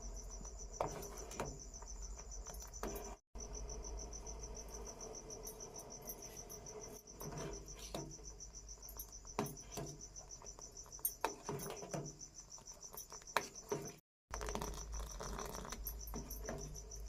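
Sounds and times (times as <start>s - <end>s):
cricket chirping: 0.0s - 17.0s
short knocks and clinks: 14.6s - 17.0s.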